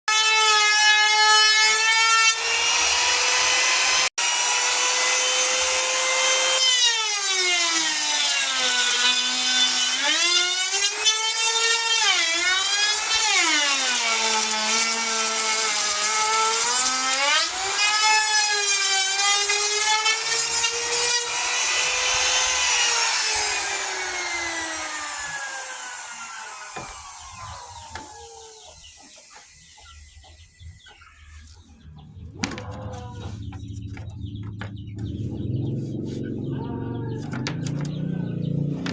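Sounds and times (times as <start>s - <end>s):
power tool cutting wood: 0.1s - 31.1s.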